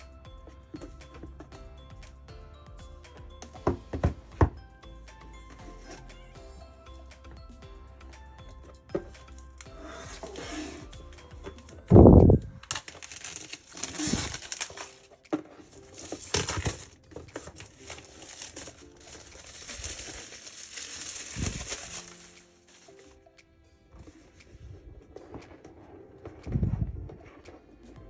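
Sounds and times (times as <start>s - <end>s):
plastic packaging crinkling: 12.6s - 15.2s, 15.9s - 23.0s.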